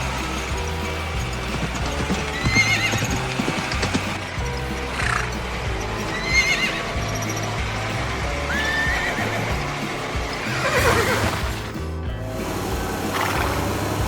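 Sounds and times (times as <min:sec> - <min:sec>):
cartoon background music: 0:00.0 - 0:14.0
animal-like calls: 0:04.9 - 0:05.4.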